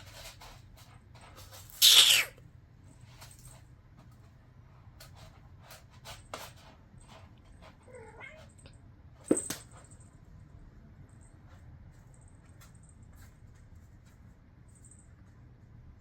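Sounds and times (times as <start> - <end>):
cat mew: 1.8 - 2.3.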